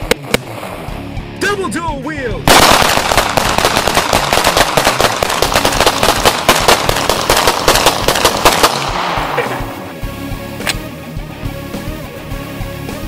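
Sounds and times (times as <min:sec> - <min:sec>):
rapid overlapping handgun fire: 0:02.5 - 0:09.8.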